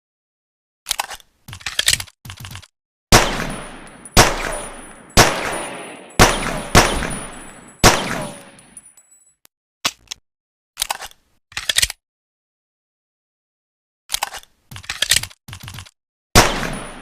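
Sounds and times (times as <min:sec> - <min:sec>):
pistol gunshots echoing: 0:03.1 - 0:08.8, 0:16.4 - 0:17.0.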